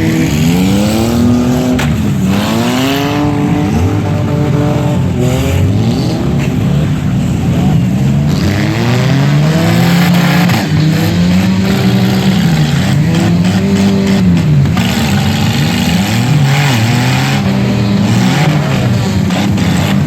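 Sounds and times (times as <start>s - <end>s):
car engines revving: 0.0s - 20.0s.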